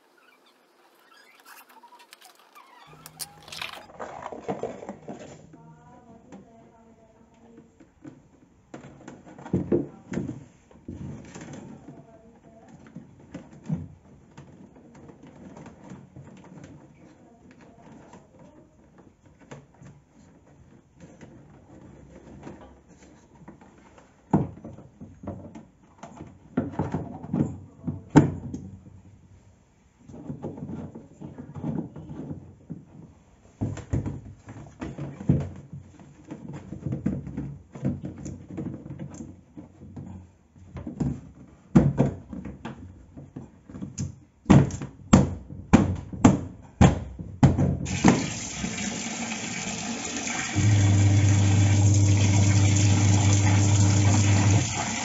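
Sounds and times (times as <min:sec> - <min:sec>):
knocks and clunks of handling: 0:07.6 - 0:29.2, 0:30.0 - 0:48.0
washing machine motor humming: 0:47.9 - 0:55.0
water gushing into machine: 0:47.9 - 0:55.0.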